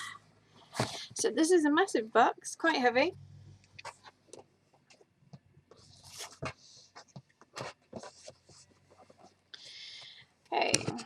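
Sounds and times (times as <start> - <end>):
cardboard scraping rustles: 5.8 - 9.4.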